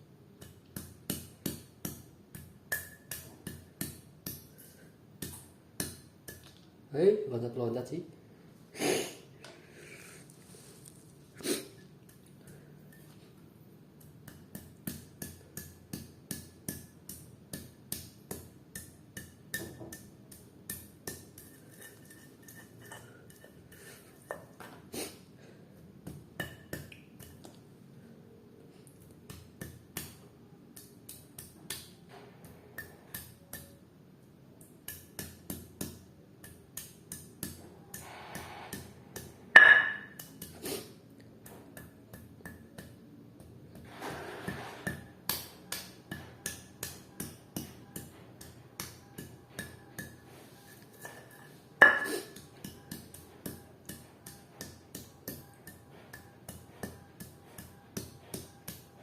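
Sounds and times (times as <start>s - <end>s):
pestle pounding in mortar: 0.4s - 4.6s, 14.0s - 21.6s, 34.9s - 40.6s, 51.8s - 59.0s.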